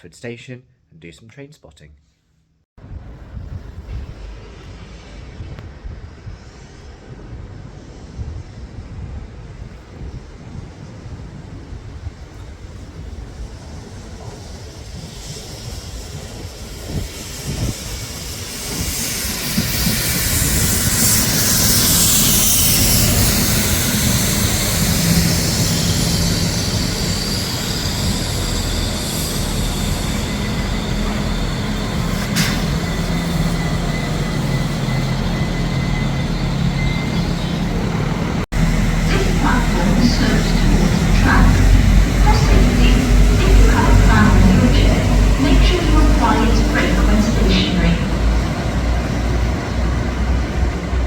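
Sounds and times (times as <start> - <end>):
train engine humming: 2.8 - 51.0
train wheels and brakes squealing: 12.1 - 51.0.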